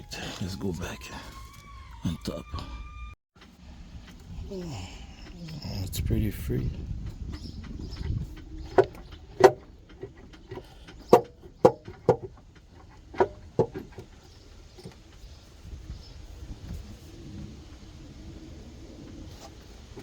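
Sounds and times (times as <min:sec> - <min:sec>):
hand tools knocking against engine: 0:07.0 - 0:15.0.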